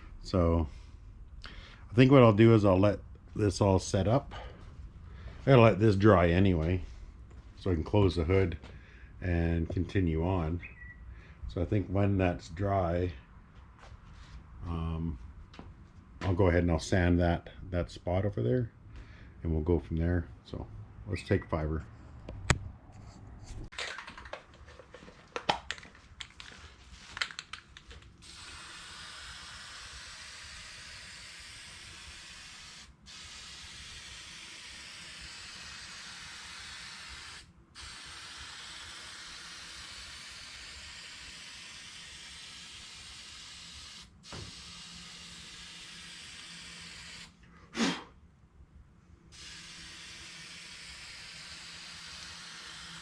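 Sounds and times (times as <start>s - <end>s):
aerosol spray can hissing: 28.2s - 47.4s, 49.4s - 53.0s.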